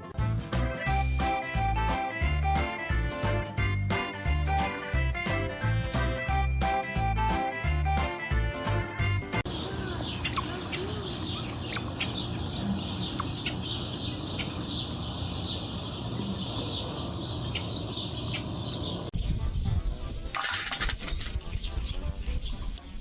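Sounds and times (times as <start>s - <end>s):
small birds chirping: 9.4s - 20.0s, 21.4s - 22.8s.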